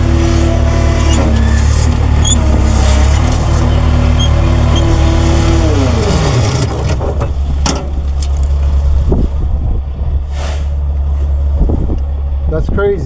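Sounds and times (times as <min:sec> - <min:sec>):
diesel engine running: 0:00.0 - 0:13.0
short hiss: 0:10.3 - 0:10.8.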